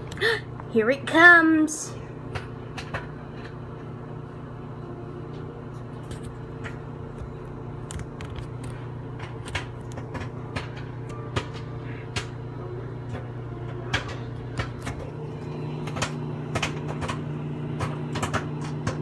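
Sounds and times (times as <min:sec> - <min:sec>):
microwave oven humming: 0:00.0 - 0:19.0
popcorn popping: 0:02.2 - 0:04.5, 0:05.3 - 0:19.0.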